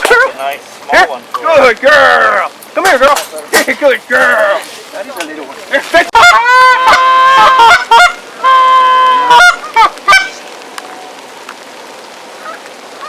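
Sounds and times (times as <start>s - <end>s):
goose honking: 6.1s - 10.4s.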